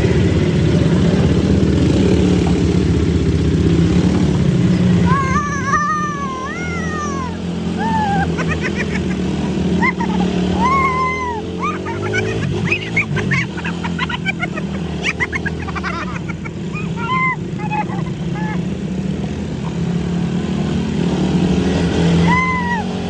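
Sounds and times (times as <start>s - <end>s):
high rising and falling calls: 4.3s - 18.8s.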